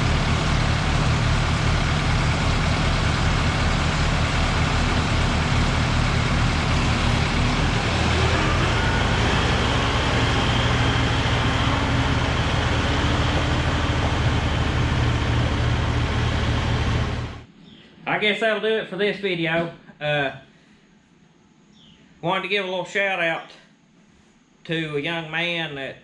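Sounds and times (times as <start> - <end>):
tractor diesel engine running: 0.0 - 17.5.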